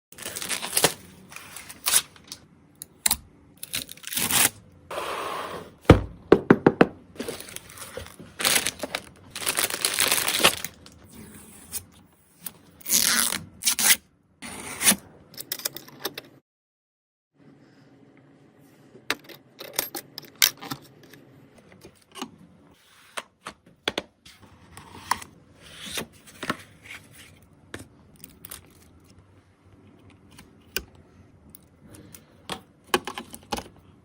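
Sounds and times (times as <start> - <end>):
packaging tearing: 0.2 - 2.4, 3.6 - 4.6, 7.2 - 11.8, 12.8 - 14.0
plastic crinkling: 0.2 - 2.4, 7.2 - 11.1.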